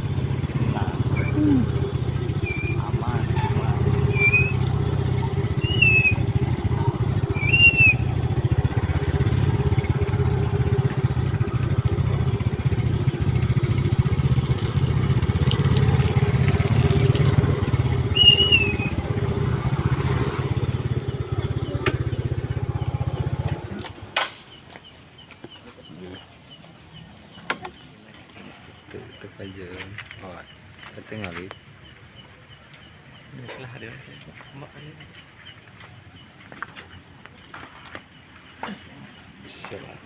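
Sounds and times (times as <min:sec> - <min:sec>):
motorcycle engine idling: 0:00.0 - 0:40.0
bird whistled chirp: 0:02.4 - 0:02.9, 0:04.0 - 0:04.6, 0:05.6 - 0:06.4, 0:07.3 - 0:08.2, 0:18.0 - 0:19.0.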